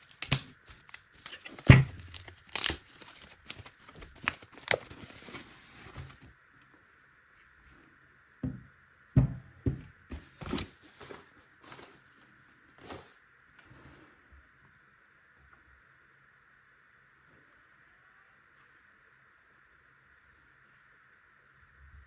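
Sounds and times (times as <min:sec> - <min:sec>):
cardboard packaging rustling: 0:00.0 - 0:06.3, 0:10.1 - 0:12.1, 0:12.7 - 0:13.2.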